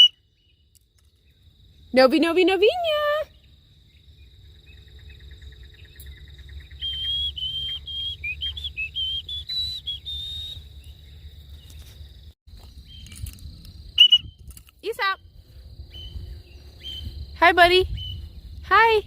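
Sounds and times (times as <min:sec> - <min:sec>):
high whistled notes: 0:06.8 - 0:10.6, 0:14.0 - 0:14.4.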